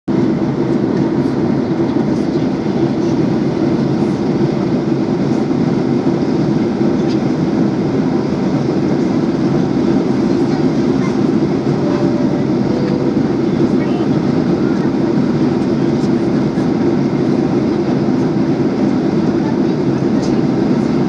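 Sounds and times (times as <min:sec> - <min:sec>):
airliner cabin noise: 0:00.1 - 0:21.0.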